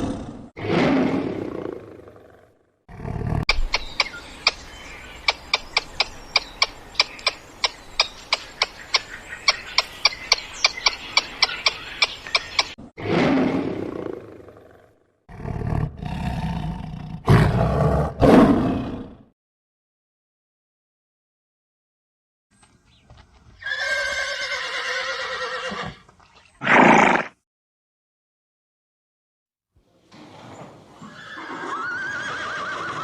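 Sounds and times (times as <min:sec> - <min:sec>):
big cat roaring: 0:00.0 - 0:03.5, 0:13.0 - 0:19.3
fast sharp clicks: 0:03.5 - 0:12.8.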